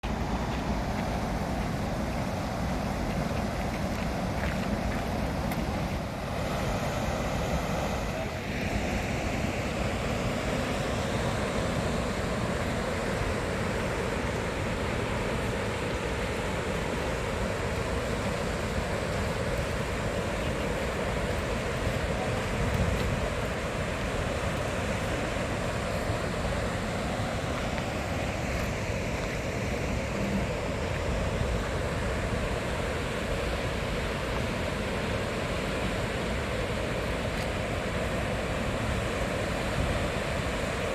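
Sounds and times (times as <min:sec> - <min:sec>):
wind buffeting microphone: 0:00.1 - 0:40.9.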